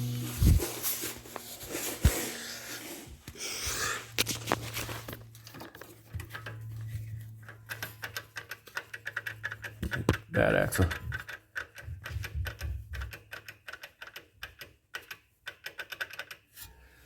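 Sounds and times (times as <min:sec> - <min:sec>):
steady low hum: 0:00.0 - 0:08.1
axle joint clicking rapidly: 0:07.4 - 0:16.5.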